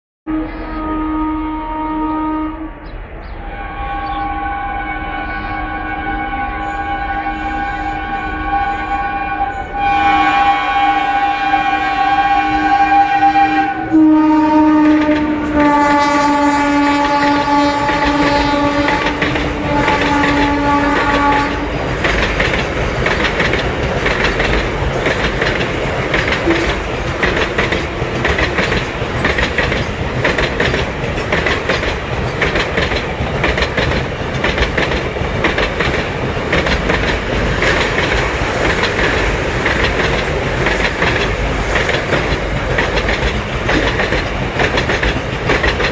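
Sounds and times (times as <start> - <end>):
locomotive horn blowing: 0.2 - 21.8, 26.4 - 28.6
train wagons clickety-clack: 14.7 - 45.9.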